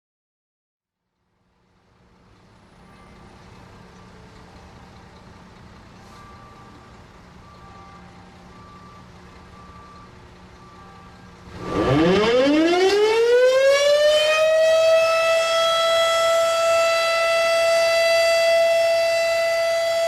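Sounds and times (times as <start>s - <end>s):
steady low hum: 1.2s - 12.4s.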